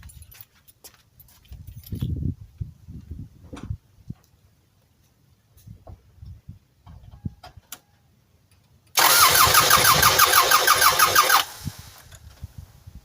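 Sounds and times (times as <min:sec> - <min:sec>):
engine starter cranking: 0:09.0 - 0:12.3.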